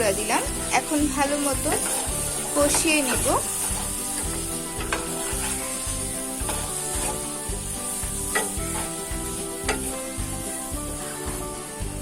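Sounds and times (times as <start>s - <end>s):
background music: 0.0s - 12.0s
food sizzling in oil: 0.0s - 12.0s
spatula clicking against pan: 8.3s - 8.8s, 9.6s - 10.0s.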